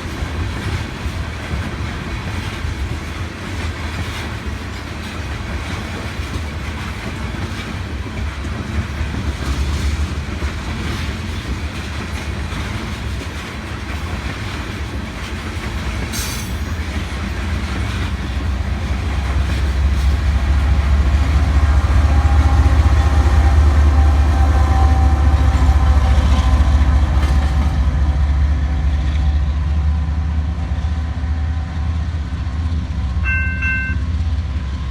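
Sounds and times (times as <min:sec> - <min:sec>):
train rumbling past: 0:00.0 - 0:34.9
thin steady tone: 0:33.2 - 0:34.0.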